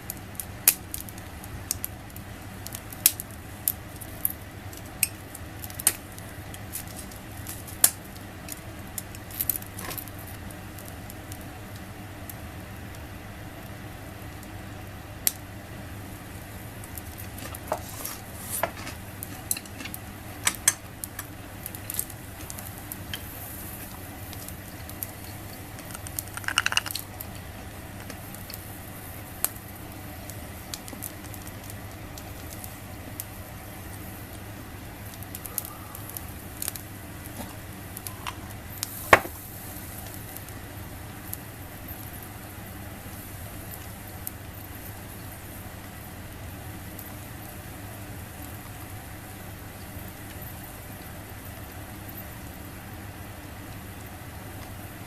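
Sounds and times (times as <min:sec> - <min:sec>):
low background hum: 0:00.0 - 0:55.0.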